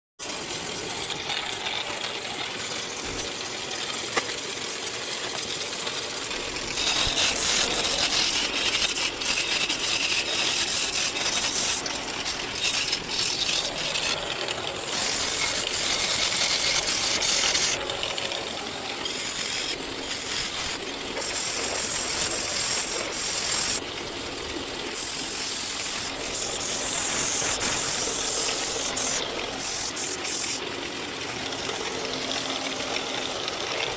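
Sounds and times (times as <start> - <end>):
power tool cutting wood: 6.6 - 23.9, 25.0 - 30.6.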